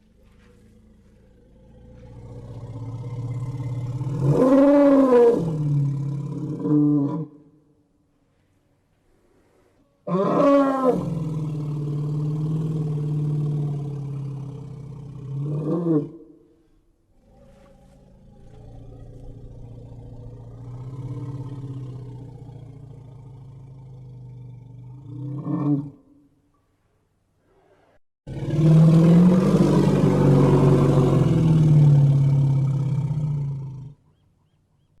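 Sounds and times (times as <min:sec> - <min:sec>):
elephant roaring and rumbling: 0:00.0 - 0:07.2, 0:17.1 - 0:26.0, 0:27.5 - 0:34.0
elephant low rough call: 0:17.1 - 0:25.6.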